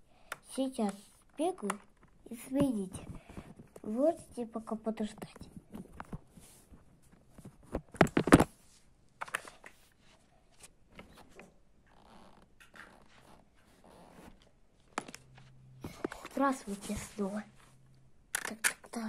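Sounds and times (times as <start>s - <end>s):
soft rustling: 2.1s - 17.8s.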